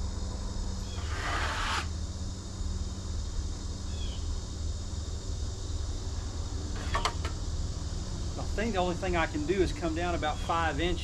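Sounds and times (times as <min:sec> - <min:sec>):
insects droning: 0:00.0 - 0:11.0
short scraping: 0:01.0 - 0:01.9.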